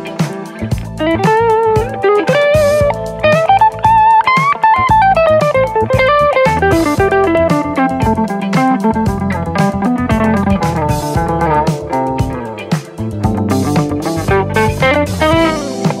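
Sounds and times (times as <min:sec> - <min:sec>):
bass: 0:00.0 - 0:16.0
drums: 0:00.0 - 0:16.0
electric guitar lead melody: 0:00.0 - 0:16.0.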